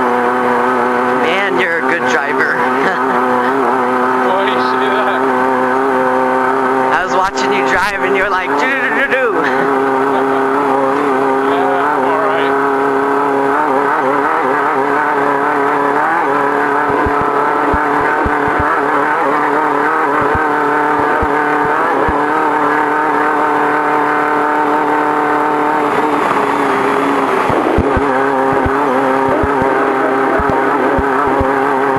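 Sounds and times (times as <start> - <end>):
race car engine at high revs: 0.0 - 31.9.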